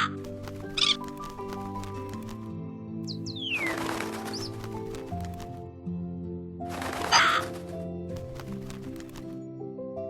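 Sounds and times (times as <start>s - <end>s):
harsh bird call: 6.8s - 7.8s.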